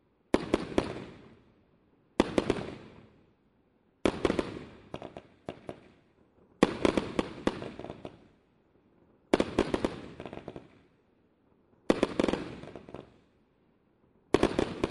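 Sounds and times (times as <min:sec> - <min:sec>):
firework bursts with crackling: 0:00.3 - 0:01.4, 0:02.2 - 0:03.1, 0:04.0 - 0:06.0, 0:06.6 - 0:08.3, 0:09.3 - 0:10.8, 0:11.9 - 0:13.2, 0:14.3 - 0:14.9.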